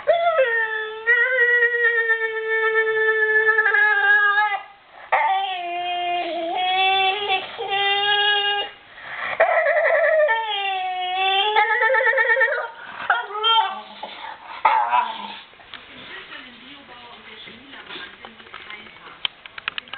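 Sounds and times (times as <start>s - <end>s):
dog howling wail: 0.0s - 15.4s.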